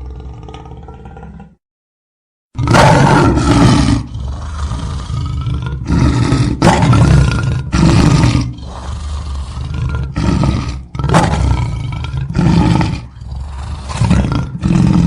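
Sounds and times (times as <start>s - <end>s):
lion roaring: 0.0s - 1.6s, 2.6s - 15.0s
lion rumbling: 0.0s - 1.6s, 2.6s - 15.0s.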